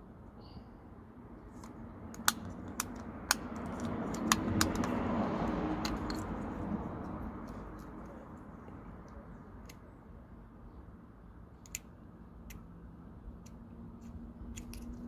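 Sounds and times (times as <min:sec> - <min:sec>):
metallic clicks of hand tools: 0:01.6 - 0:05.0.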